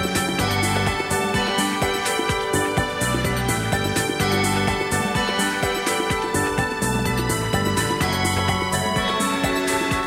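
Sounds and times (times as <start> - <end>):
background music with keyboard: 0.0 - 10.0.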